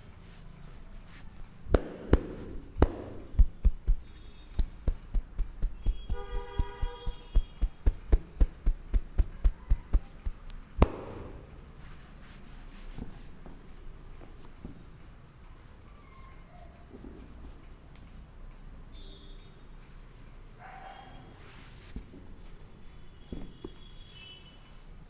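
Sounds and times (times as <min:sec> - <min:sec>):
hand slaps: 0:01.7 - 0:11.6
hand taps: 0:01.8 - 0:11.6.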